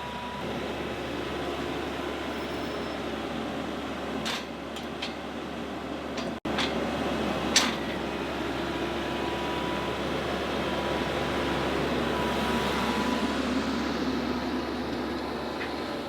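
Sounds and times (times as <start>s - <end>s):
tractor engine running: 3.4s - 16.0s.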